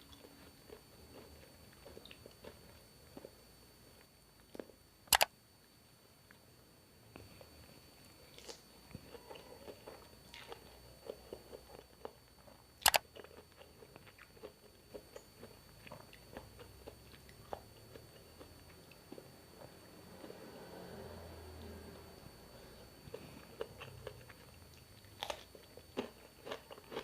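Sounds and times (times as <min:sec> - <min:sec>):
person chewing: 0:00.0 - 0:03.4, 0:08.2 - 0:20.4, 0:22.8 - 0:27.0.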